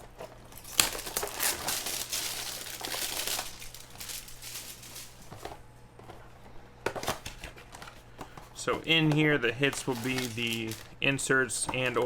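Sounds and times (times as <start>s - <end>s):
plastic wrapping crinkling: 0.0s - 5.6s, 8.9s - 11.0s.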